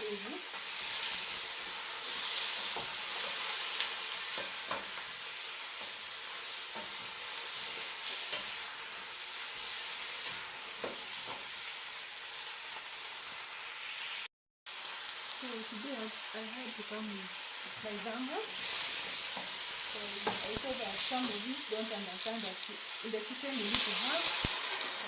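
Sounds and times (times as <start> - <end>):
vegetables sizzling in a pan: 0.0 - 25.0
spoon scraping a pan: 18.5 - 21.4.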